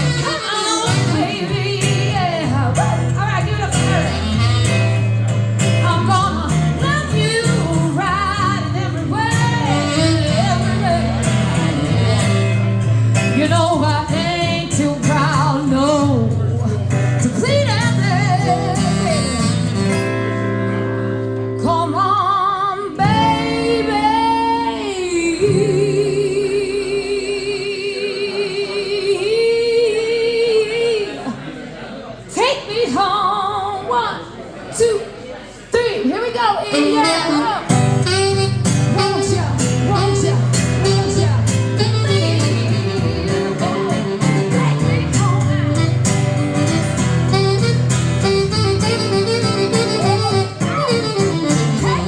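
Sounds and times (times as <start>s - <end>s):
bass line: 0.0s - 20.8s, 37.7s - 52.0s
guitar accompaniment: 0.0s - 28.3s, 36.4s - 52.0s
person singing vibrato: 5.8s - 16.5s, 23.0s - 30.9s, 36.7s - 52.0s.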